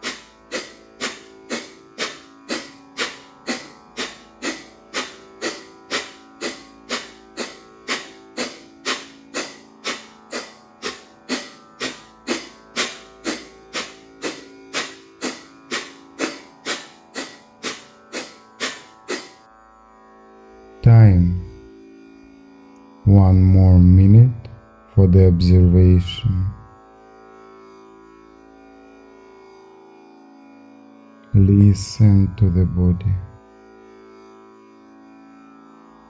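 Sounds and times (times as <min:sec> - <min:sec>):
steady drone: 0:00.0 - 0:19.5.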